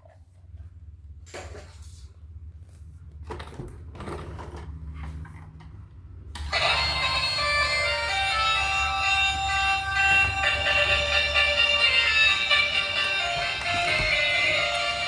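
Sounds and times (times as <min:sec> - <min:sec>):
toy electronic tune: 0:06.4 - 0:15.0.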